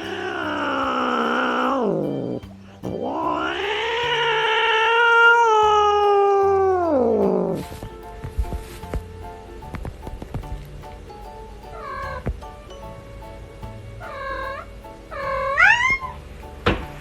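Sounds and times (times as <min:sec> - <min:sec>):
cat yowling: 0:00.0 - 0:07.6, 0:14.0 - 0:16.2.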